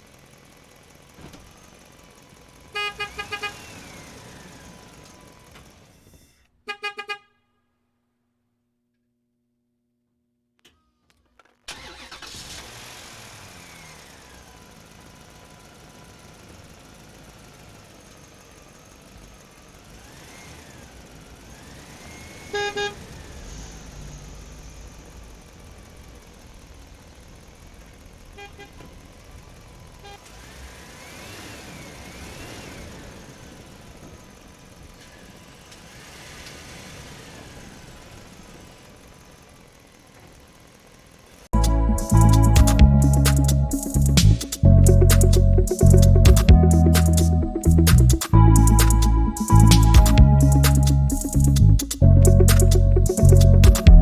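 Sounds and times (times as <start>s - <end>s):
car horn toots: 2.7s - 3.7s, 6.7s - 7.4s, 22.5s - 23.0s, 28.4s - 28.8s
faint vehicle noise: 10.6s - 54.0s.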